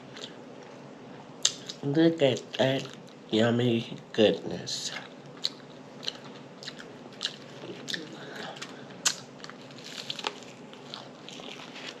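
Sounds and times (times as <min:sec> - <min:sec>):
person chewing: 0:00.0 - 0:00.7, 0:04.9 - 0:12.0.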